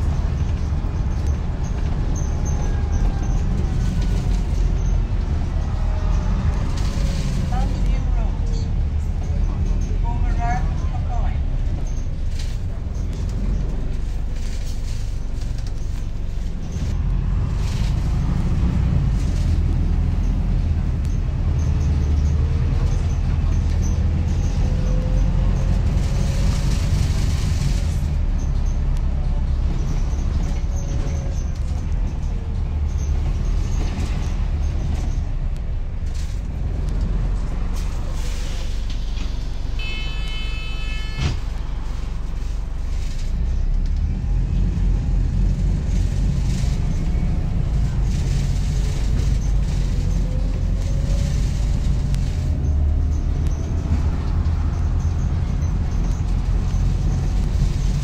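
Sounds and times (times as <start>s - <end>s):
bus engine and road rumble: 0.0s - 58.0s
rattling of bus fittings: 19.0s - 39.7s.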